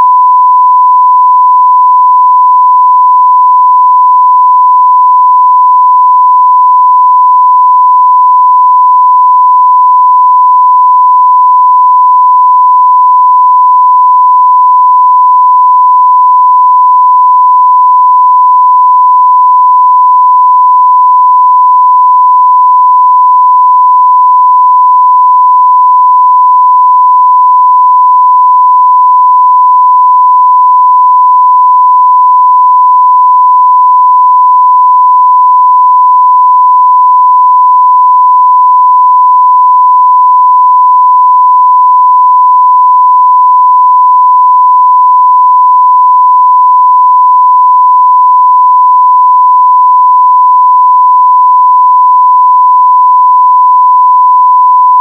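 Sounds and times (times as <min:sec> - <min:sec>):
sine wave test tone: 0:00.0 - 0:55.0.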